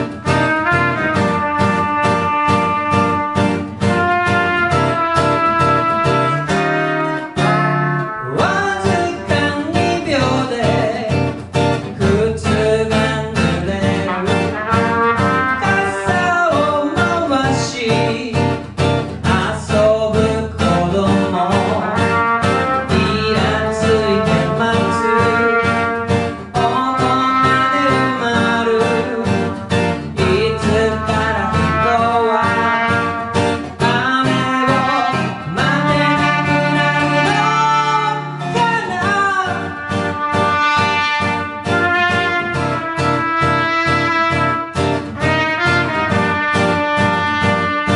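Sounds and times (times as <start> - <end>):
live band music: 0.0 - 47.9
person singing: 6.2 - 42.5.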